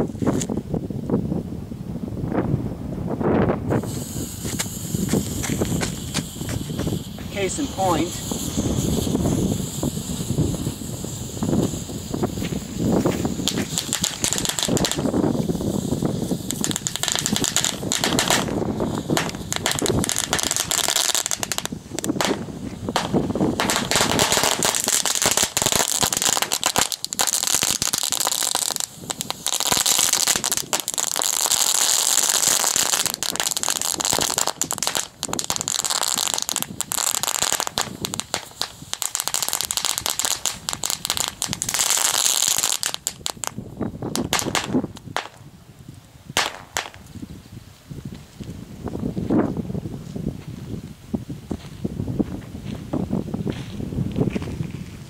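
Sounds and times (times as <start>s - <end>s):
fireworks crackling and popping: 0.0s - 0.6s, 3.2s - 55.0s
fizzing hiss: 3.7s - 43.5s.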